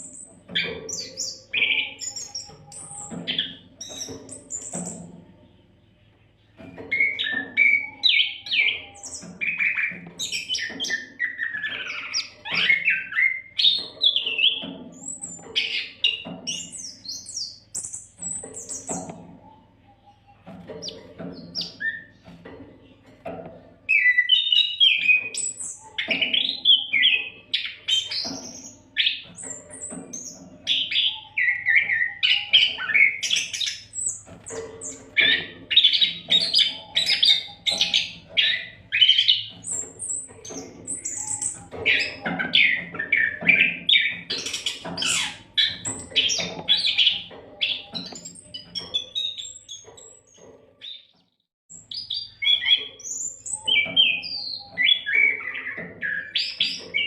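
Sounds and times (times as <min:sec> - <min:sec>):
songbird singing whistled notes: 0:23.9 - 0:50.2.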